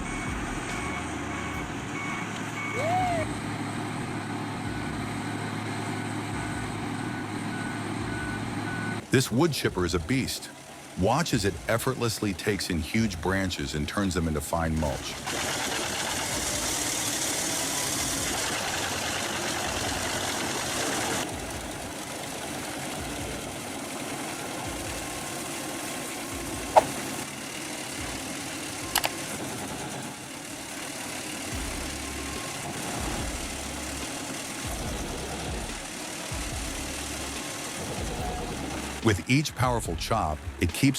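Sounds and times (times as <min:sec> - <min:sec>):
heavy machinery engine running: 0:00.0 - 0:40.7
sharp knocks: 0:26.7 - 0:27.2.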